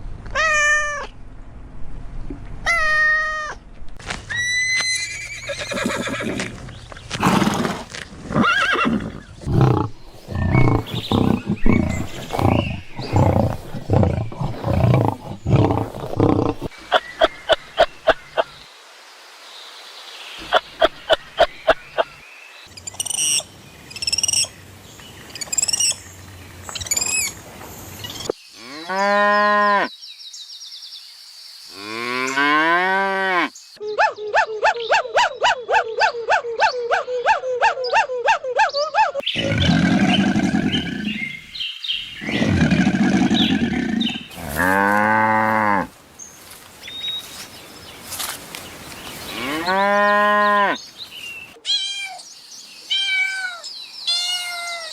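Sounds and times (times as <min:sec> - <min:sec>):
cattle mooing: 0:42.3 - 0:45.9.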